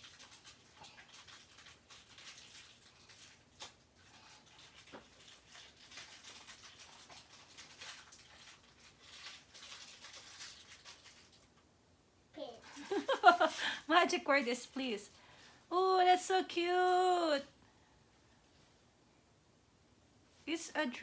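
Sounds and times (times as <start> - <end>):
gift packaging rustling and crinkling: 0.0 - 11.7, 12.4 - 17.6.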